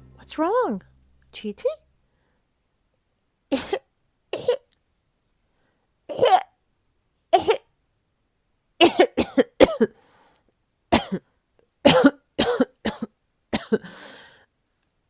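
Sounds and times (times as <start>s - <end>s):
short coughs: 11.0s - 11.2s, 11.9s - 13.8s.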